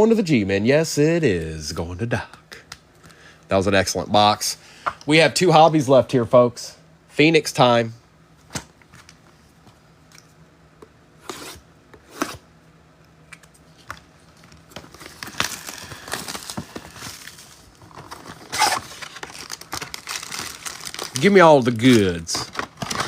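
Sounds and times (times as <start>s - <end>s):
plastic wrap crinkling and tearing: 14.8s - 23.0s.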